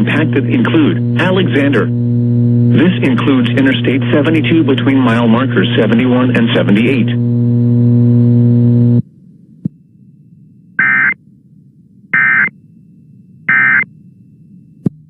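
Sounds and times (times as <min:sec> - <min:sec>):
faint hum: 0:00.0 - 0:15.0
low electronic buzz: 0:00.0 - 0:15.0
warbling data bursts: 0:10.8 - 0:11.2, 0:12.1 - 0:12.7, 0:13.4 - 0:13.9.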